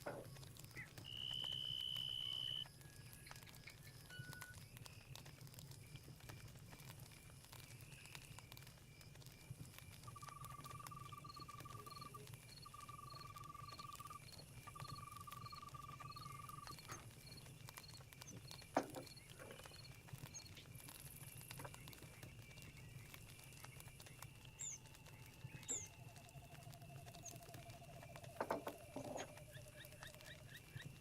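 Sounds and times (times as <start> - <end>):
crickets and insects chirping: 0.0 - 31.0.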